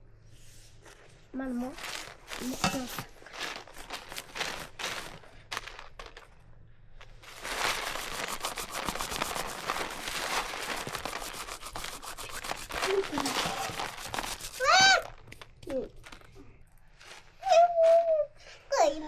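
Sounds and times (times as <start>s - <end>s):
crackling and rustling: 0.7s - 18.3s.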